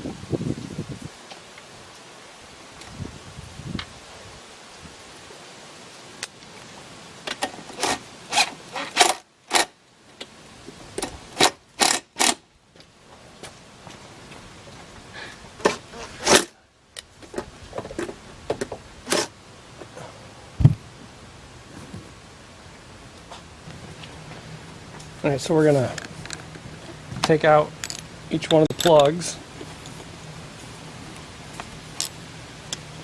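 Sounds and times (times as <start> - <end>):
low thump: 20.6 - 20.8
tools clicking and scraping: 25.8 - 26.6, 27.2 - 30.0, 32.0 - 32.2.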